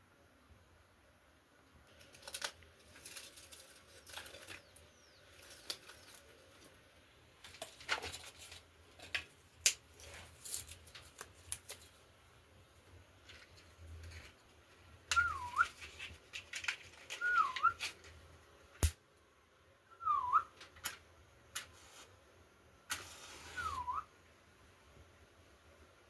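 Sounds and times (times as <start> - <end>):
dry sticks snapping and crackling: 1.9 - 6.7, 7.4 - 12.0, 15.1 - 18.2, 18.8 - 19.0.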